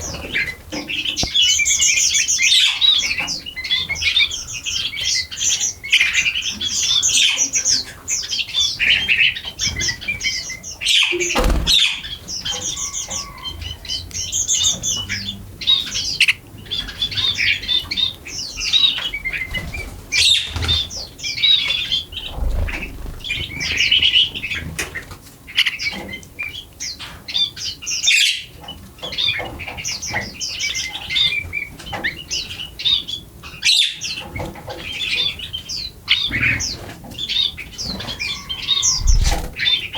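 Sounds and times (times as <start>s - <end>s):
flock of birds chirping: 0.0s - 39.9s
wingbeat flutters: 11.3s - 12.0s, 22.1s - 24.5s, 39.0s - 39.6s.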